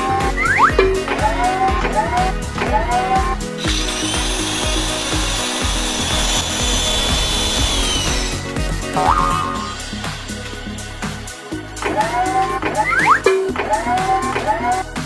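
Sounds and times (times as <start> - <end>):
power tool whining: 0.0 - 10.6
background music with beat: 0.0 - 15.0.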